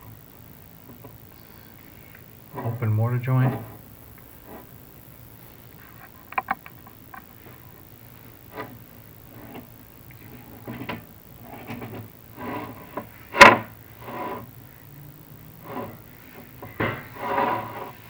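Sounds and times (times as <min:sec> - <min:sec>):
camera cable scraping in flue: 0:04.4 - 0:04.8, 0:08.3 - 0:14.6, 0:15.6 - 0:18.0.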